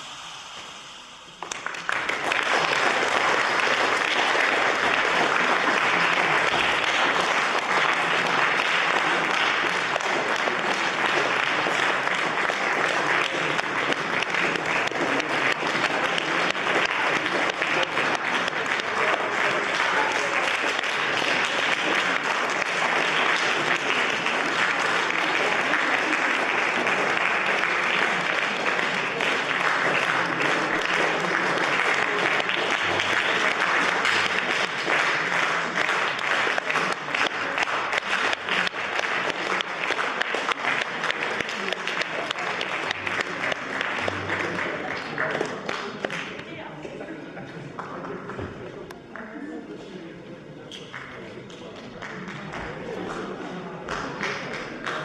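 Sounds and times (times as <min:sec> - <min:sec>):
audience applauding: 0:00.0 - 0:46.6, 0:50.8 - 0:55.0.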